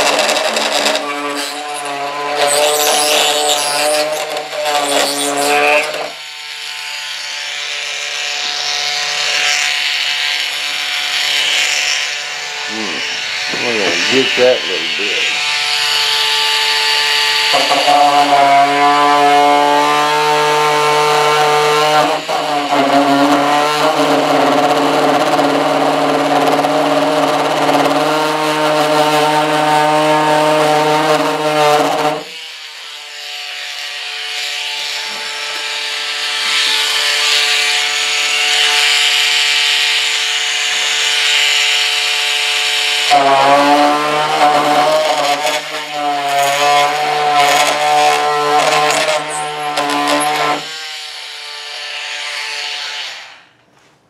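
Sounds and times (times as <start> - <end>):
cutting scrape: 0.0 - 7.0, 8.2 - 18.9, 33.9 - 39.4, 43.0 - 50.9
power tool whining: 0.0 - 53.5.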